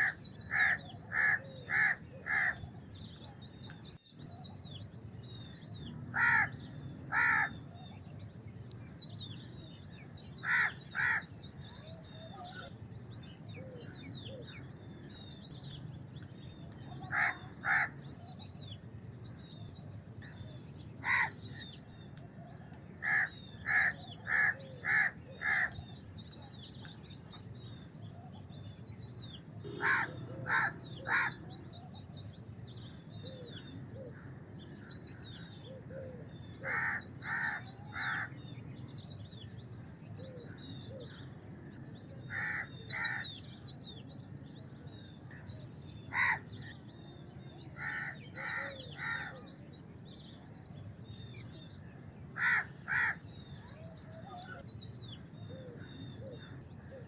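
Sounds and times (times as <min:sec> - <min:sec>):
crows cawing: 0:00.0 - 0:02.7, 0:06.1 - 0:07.6, 0:10.4 - 0:11.3, 0:17.0 - 0:18.1, 0:21.0 - 0:21.5, 0:23.0 - 0:25.9, 0:29.6 - 0:31.6, 0:36.6 - 0:38.4, 0:42.3 - 0:43.3, 0:46.1 - 0:46.5, 0:47.8 - 0:49.4, 0:52.4 - 0:53.2
small birds twittering: 0:00.0 - 0:57.0.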